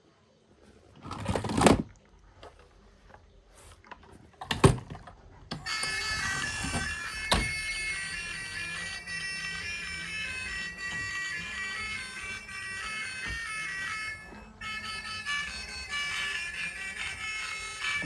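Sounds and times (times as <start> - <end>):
rustling handling noises: 0.6 - 7.4
droning reed music: 5.6 - 18.0.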